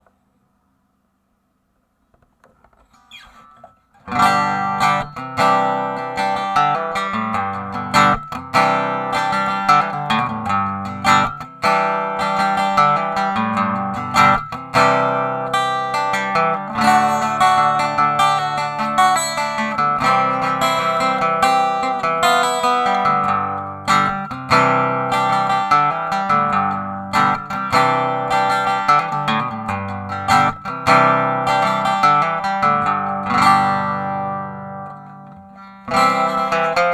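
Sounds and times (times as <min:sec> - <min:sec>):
acoustic guitar playing: 0:03.0 - 0:36.9.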